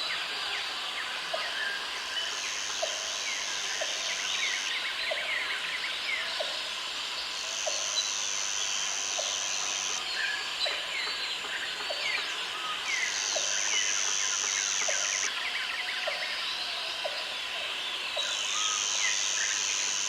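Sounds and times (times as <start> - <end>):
high-pitched insect buzz: 7.4 - 10.4, 12.8 - 15.3, 18.2 - 20.0.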